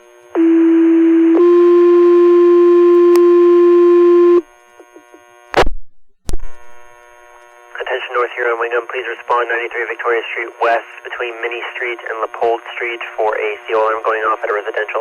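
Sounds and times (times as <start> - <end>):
radio noise clicks: 4.7 - 7.6, 14.4 - 14.8.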